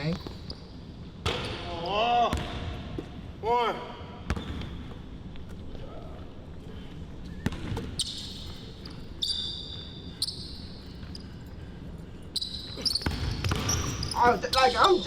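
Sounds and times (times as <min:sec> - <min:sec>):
sneakers squeaking on floor: 0:00.0 - 0:03.2, 0:04.3 - 0:05.5, 0:07.2 - 0:11.5, 0:12.3 - 0:15.0
basketball bouncing: 0:02.3 - 0:03.1, 0:04.2 - 0:05.0, 0:07.4 - 0:07.9, 0:12.8 - 0:14.2.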